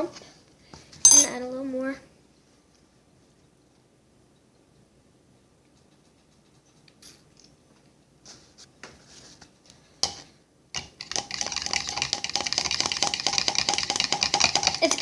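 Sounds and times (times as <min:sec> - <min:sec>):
fast stirring in a cup: 0:10.8 - 0:15.0.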